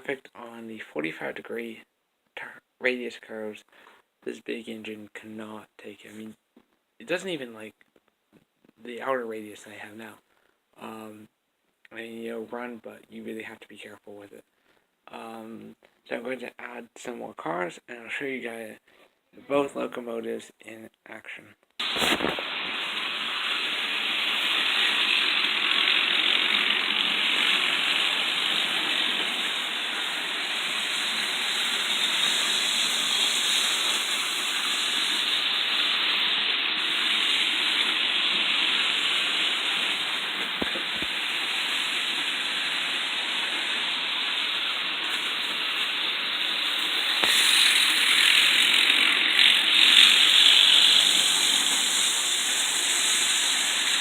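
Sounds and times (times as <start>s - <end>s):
model train motors whirring: 23.0s - 41.6s, 42.4s - 54.0s.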